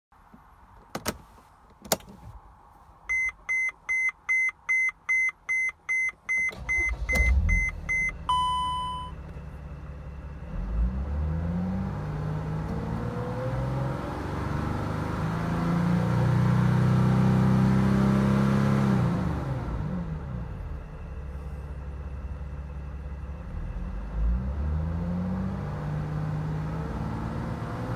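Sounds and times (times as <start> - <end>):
warning chime beeping: 3.1 - 9.2
van engine cranking and revving: 6.5 - 27.9.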